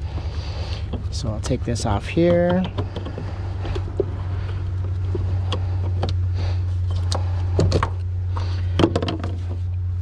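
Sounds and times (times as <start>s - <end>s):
steady low hum: 0.0s - 10.0s
light clicks and knocks: 2.2s - 6.2s.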